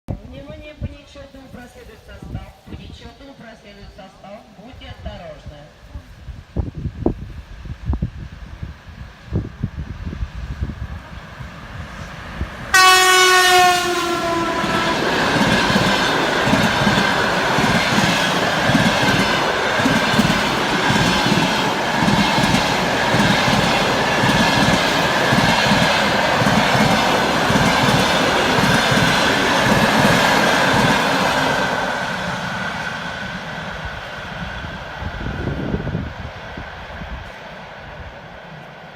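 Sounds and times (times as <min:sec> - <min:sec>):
train horn blast: 0:12.7 - 0:15.4.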